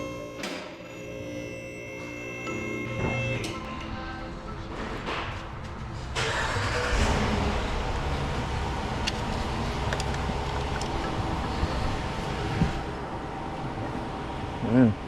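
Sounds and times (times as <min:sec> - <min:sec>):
car road and tyre noise: 0:04.6 - 0:15.0.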